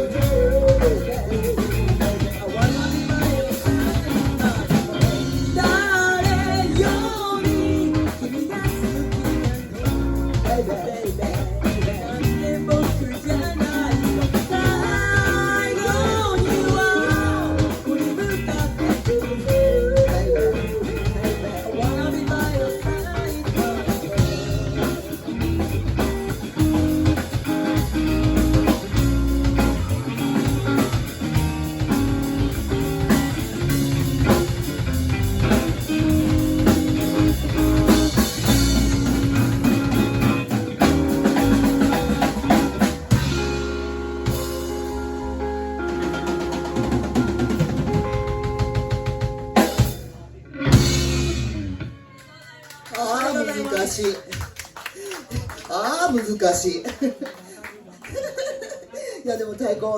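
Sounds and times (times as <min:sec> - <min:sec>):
lead melody line: 0:00.0 - 0:51.9
rock band playing live: 0:00.0 - 0:52.2.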